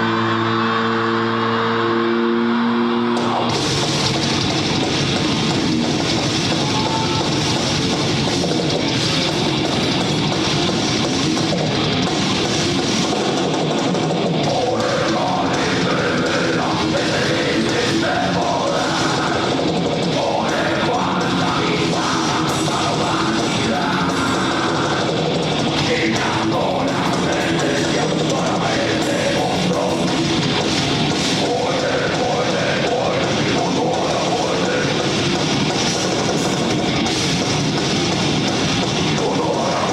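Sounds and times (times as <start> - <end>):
distorted guitars: 0.0 - 39.9
drum kit: 3.0 - 39.9
person singing: 6.4 - 7.7, 14.4 - 35.4, 39.0 - 39.9.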